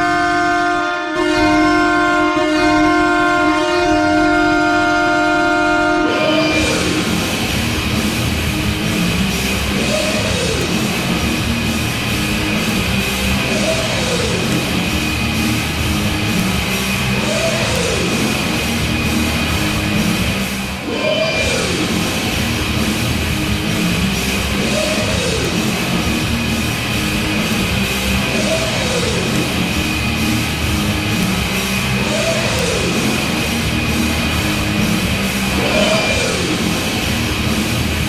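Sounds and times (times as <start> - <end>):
goal horn multi-tone chord: 0.0 - 20.4
loud rock song with beat: 6.5 - 38.0.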